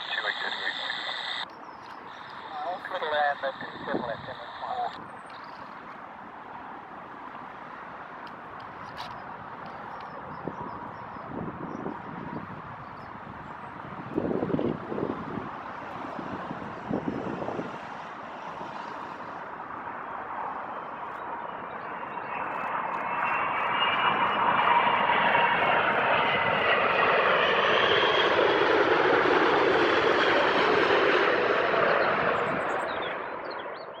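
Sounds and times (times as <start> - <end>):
jet engine whine sliding down: 0.0 - 1.4, 2.1 - 5.0, 21.8 - 33.6
jet engines passing: 0.0 - 34.0.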